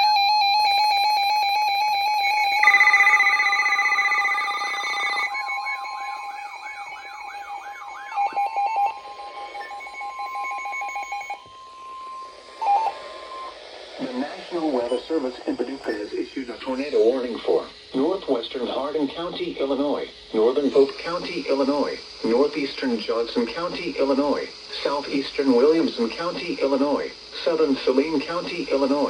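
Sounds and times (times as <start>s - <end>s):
pulsing alarm tone: 0.0s - 16.0s
steady high tone: 0.0s - 17.3s
warbling electronic sweeps: 2.5s - 16.0s
short beep: 2.6s - 15.1s.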